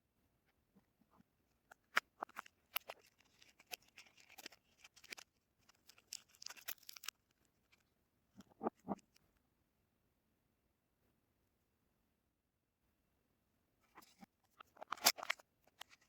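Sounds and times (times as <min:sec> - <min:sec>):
wrapping crinkling: 0:02.2 - 0:07.8.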